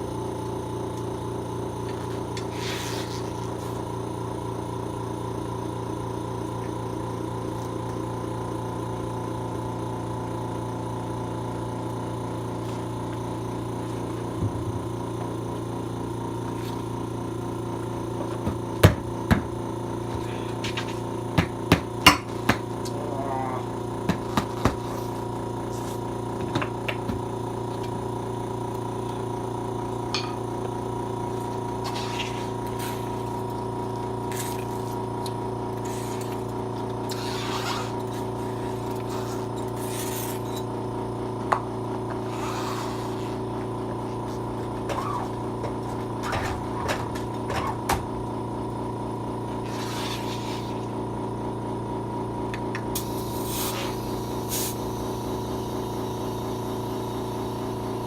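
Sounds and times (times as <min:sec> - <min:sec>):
air hissing: 0:02.5 - 0:03.6, 0:31.8 - 0:33.4, 0:35.8 - 0:40.6, 0:42.2 - 0:43.6, 0:49.6 - 0:50.9, 0:52.9 - 0:57.9
machine humming: 0:11.4 - 0:58.0.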